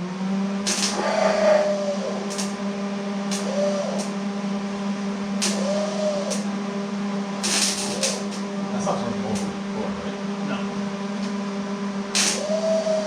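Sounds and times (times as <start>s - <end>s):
starter motor humming: 0.0s - 13.0s
sharp clicks: 2.3s - 2.6s, 3.3s - 4.2s, 5.4s - 6.5s, 7.4s - 8.4s.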